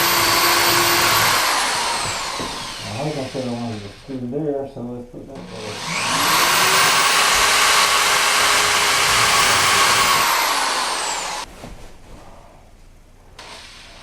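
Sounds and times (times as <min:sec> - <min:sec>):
power drill driving a screw: 0:00.0 - 0:04.1, 0:05.5 - 0:11.5, 0:13.4 - 0:14.0.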